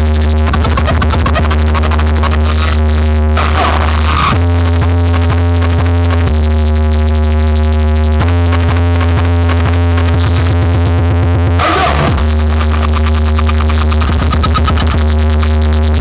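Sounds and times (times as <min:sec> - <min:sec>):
deep bass and synth chords: 0:00.0 - 0:16.0
electronic beat: 0:00.0 - 0:16.0
synth sweep: 0:11.6 - 0:16.0.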